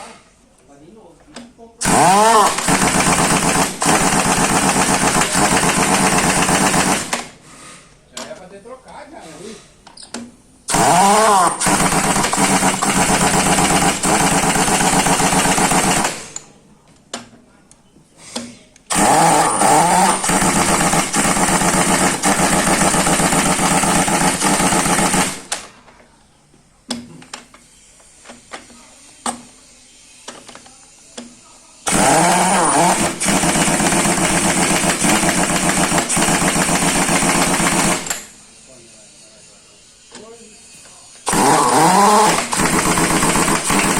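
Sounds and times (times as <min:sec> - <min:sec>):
impact wrench hammering: 0:10.2 - 0:16.4, 0:18.4 - 0:25.7, 0:31.9 - 0:38.3, 0:41.3 - 0:43.9.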